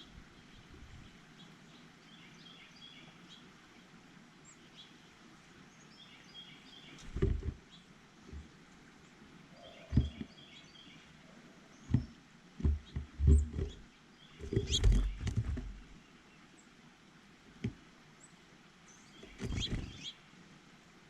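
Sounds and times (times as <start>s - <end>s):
small birds chirping: 0.0s - 16.8s, 17.5s - 20.4s
low thumps and knocks: 7.1s - 7.6s, 9.9s - 10.3s, 11.8s - 16.0s, 19.2s - 20.0s.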